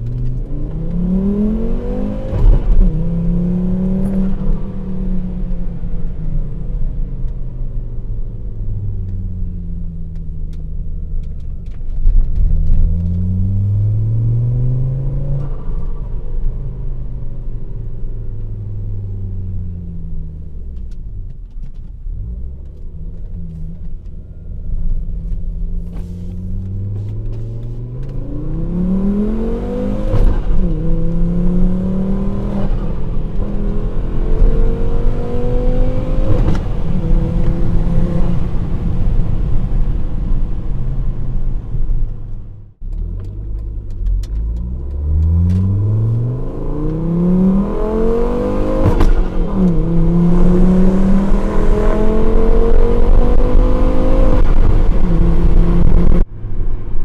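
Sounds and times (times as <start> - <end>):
car engine revving: 0.0 - 6.0, 12.3 - 16.0, 22.1 - 41.3, 42.1 - 56.3.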